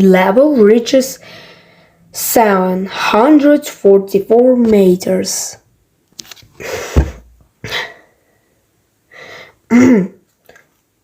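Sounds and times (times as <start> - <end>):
person coughing: 9.7 - 10.2.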